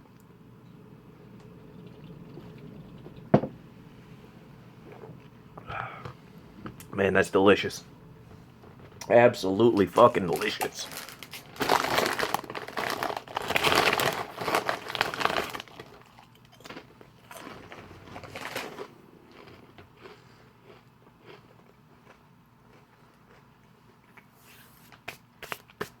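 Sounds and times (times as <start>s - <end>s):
chip bag crinkling: 8.6s - 23.4s.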